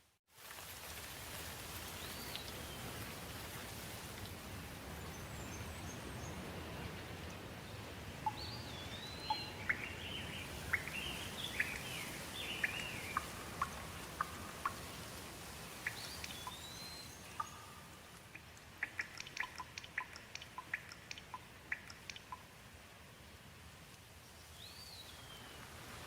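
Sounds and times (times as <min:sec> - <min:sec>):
steady rain: 0:00.0 - 0:26.0
water dripping: 0:00.5 - 0:04.5, 0:08.2 - 0:22.8
bird singing: 0:07.6 - 0:14.8, 0:15.8 - 0:22.4.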